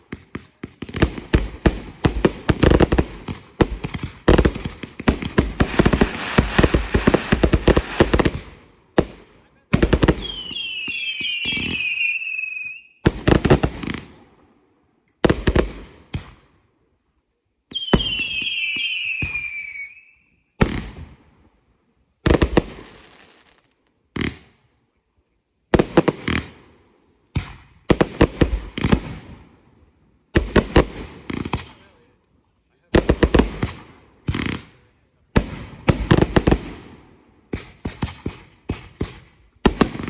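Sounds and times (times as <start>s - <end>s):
firework bangs: 0.1s - 9.2s, 37.5s - 40.0s
warbling firework whistles: 10.2s - 13.0s, 17.7s - 20.3s.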